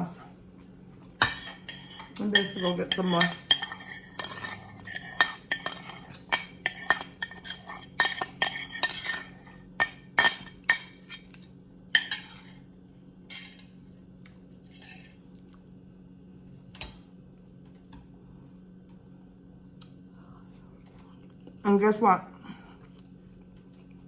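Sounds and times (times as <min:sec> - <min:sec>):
cutlery clinking on a plate: 0:01.2 - 0:11.4, 0:12.0 - 0:12.6.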